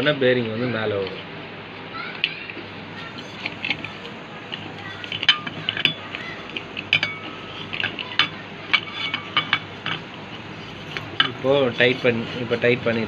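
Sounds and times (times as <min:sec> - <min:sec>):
bearing puller metallic clinks: 0:03.0 - 0:12.9.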